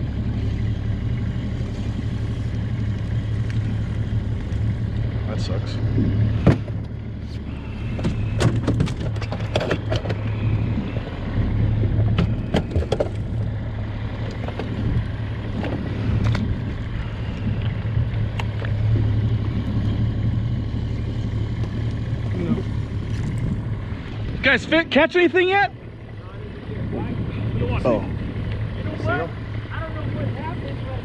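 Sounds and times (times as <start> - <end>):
knocks and clatter on boat: 0.0 - 24.5
outboard motor running: 0.0 - 31.0.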